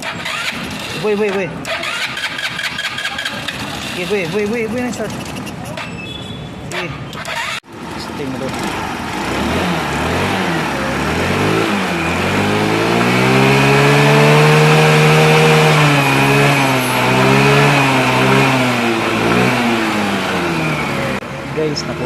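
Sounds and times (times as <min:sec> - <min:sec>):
motorcycle engine revving: 0:00.0 - 0:06.0, 0:06.7 - 0:22.0.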